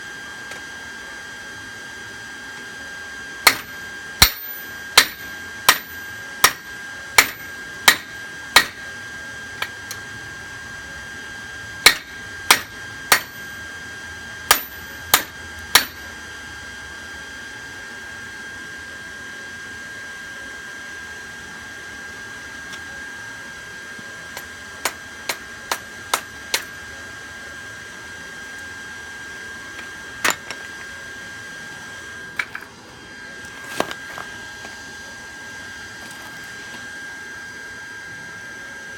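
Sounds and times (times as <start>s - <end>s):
hammer striking steel anvil: 3.5s - 8.8s, 11.8s - 13.5s, 14.5s - 16.1s, 24.4s - 26.8s, 30.2s - 30.7s.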